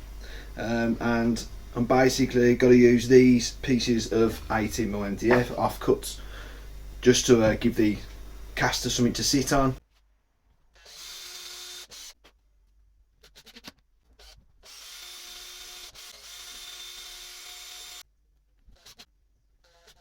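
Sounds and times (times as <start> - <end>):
power drill running: 14.7 - 18.0.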